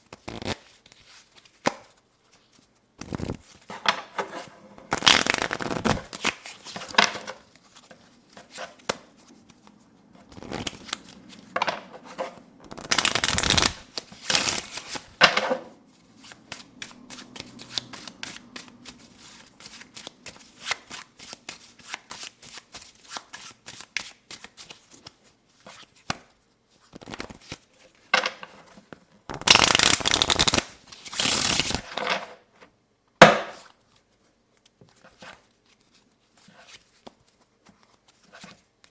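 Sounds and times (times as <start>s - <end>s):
playing cards shuffling: 0.1s - 1.6s, 2.3s - 3.5s, 4.9s - 15.2s, 16.2s - 24.8s, 29.3s - 31.8s
cards tapping and flicking: 4.9s - 7.1s, 12.7s - 15.0s, 29.3s - 31.8s.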